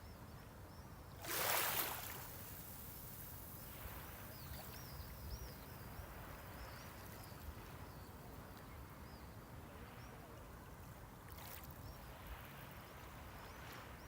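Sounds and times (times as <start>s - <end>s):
small waves washing on shore: 1.2s - 8.8s.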